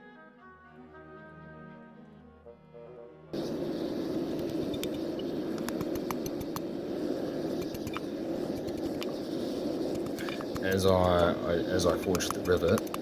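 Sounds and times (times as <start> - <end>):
forge rushing noise: 3.4 - 13.0
small sharp ticks: 4.3 - 6.7, 7.5 - 9.2, 9.8 - 13.0.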